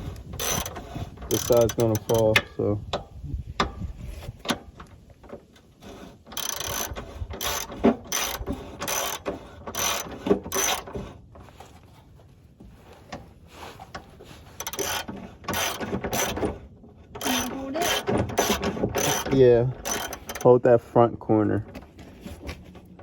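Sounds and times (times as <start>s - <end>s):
socket ratchet clicking: 1.3s - 2.5s, 6.4s - 9.2s, 14.6s - 16.4s, 17.2s - 20.5s.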